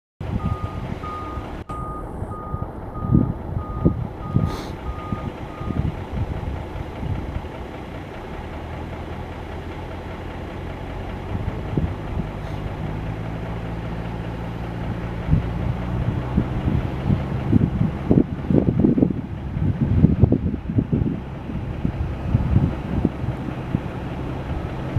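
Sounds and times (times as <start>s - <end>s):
wind gusts on microphone: 0.2s - 7.5s, 14.8s - 24.9s
low engine drone: 0.2s - 24.9s
reversing beeper: 0.4s - 6.0s.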